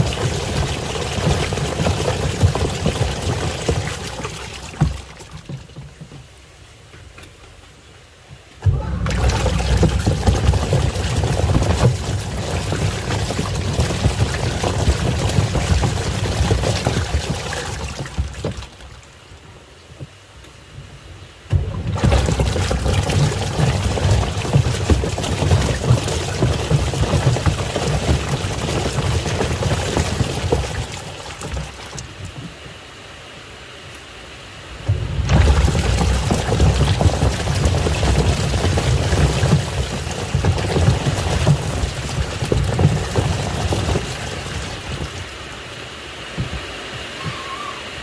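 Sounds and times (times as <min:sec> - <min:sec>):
washing machine low rumble: 0:00.0 - 0:06.6, 0:08.4 - 0:19.5, 0:20.9 - 0:32.7, 0:34.7 - 0:48.0
water churning in washing machine: 0:00.0 - 0:06.6, 0:08.6 - 0:19.4, 0:21.5 - 0:32.6, 0:34.7 - 0:48.0
faint steady hiss: 0:03.8 - 0:09.9.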